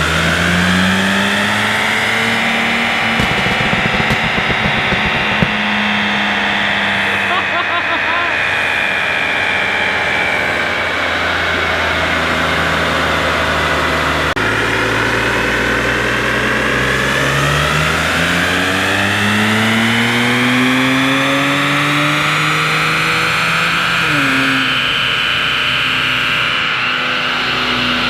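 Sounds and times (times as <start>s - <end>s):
car engine revving on dyno: 0.0s - 7.2s, 10.0s - 28.0s
turbo whine: 2.9s - 10.1s.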